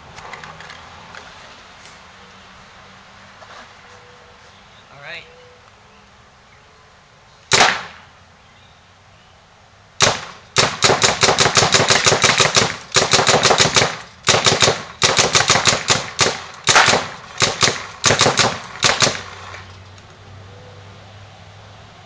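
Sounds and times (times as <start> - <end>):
paintball gun firing rapid shots: 7.5 - 8.0, 10.0 - 19.7.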